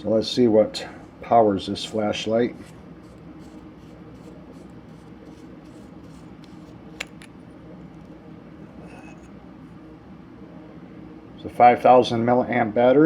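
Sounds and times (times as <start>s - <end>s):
steady low hum: 0.0s - 11.9s
flashlight cap scraping: 3.0s - 7.4s, 8.8s - 9.3s.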